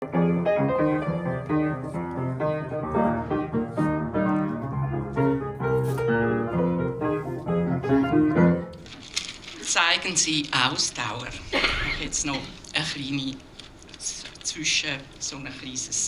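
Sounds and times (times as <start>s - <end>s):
solo piano: 0.0s - 9.0s.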